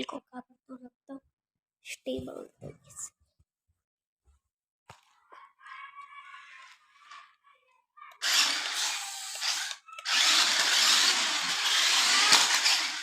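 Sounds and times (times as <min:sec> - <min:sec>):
toy car electric motor and gears: 0:08.1 - 0:13.0.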